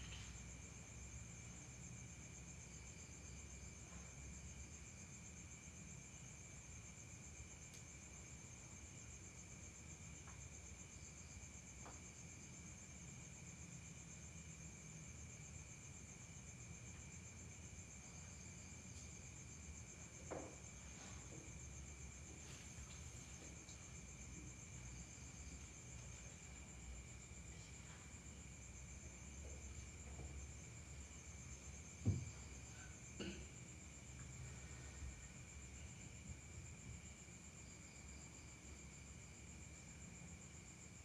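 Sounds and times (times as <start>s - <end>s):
crickets chirring: 0.0s - 41.0s
soft knock: 20.2s - 21.5s, 32.0s - 32.5s.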